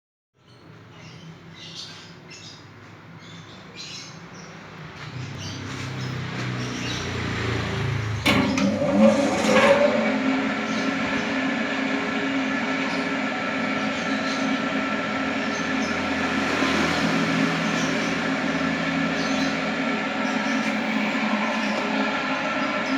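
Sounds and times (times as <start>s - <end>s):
spinner machine whirring: 8.2s - 22.9s
brief gliding squeal: 8.3s - 10.8s.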